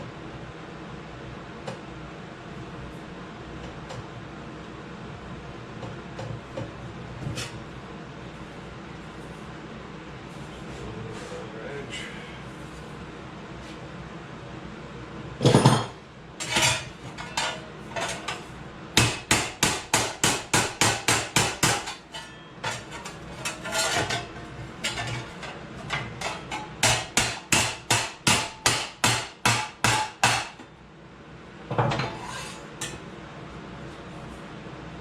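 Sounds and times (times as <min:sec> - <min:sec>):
hammer on sheet metal: 0:19.0 - 0:22.8, 0:26.8 - 0:30.6.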